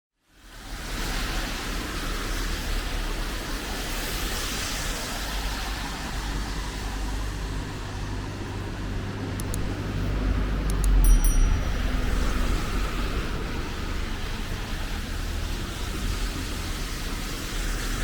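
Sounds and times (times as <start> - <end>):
traffic on a wet road: 0.2 - 10.6, 12.6 - 18.0
low hum: 9.4 - 13.3.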